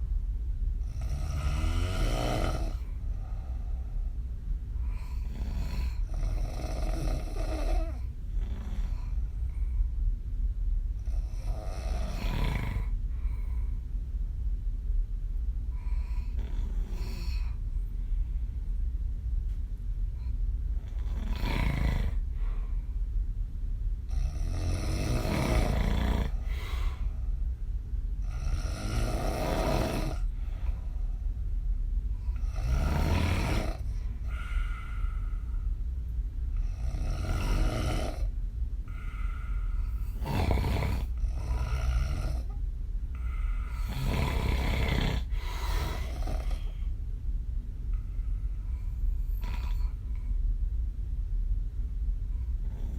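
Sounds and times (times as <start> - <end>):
low steady hum: 0.0 - 52.9
soft breathing: 0.7 - 14.2, 15.6 - 23.3, 24.1 - 50.9, 52.0 - 52.9
woman snoring: 0.8 - 3.0, 4.8 - 9.2, 11.0 - 13.0, 15.8 - 17.6, 20.8 - 22.2, 24.1 - 27.1, 28.2 - 30.4, 32.3 - 35.4, 36.6 - 38.3, 38.9 - 42.6, 43.2 - 46.8, 49.2 - 50.2, 52.6 - 52.9.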